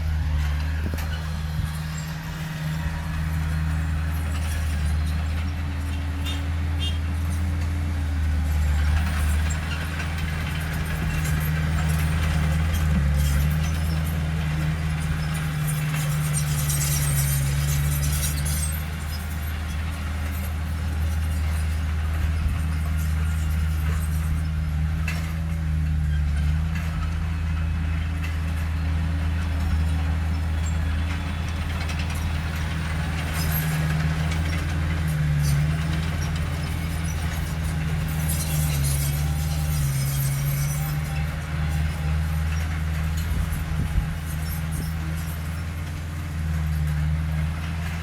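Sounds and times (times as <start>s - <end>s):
heavy diesel engine droning: 0.0s - 48.0s.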